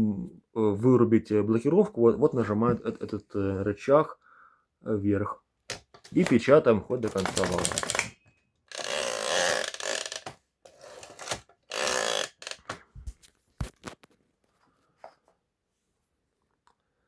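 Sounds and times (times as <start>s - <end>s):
typewriter key clicks: 7.0s - 8.1s
typewriter carriage rattling: 7.0s - 8.2s, 10.9s - 12.8s.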